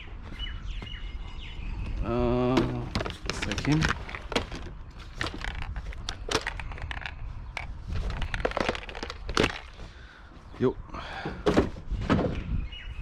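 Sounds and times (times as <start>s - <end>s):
junk clattering and knocking: 2.5s - 9.8s, 11.2s - 12.5s.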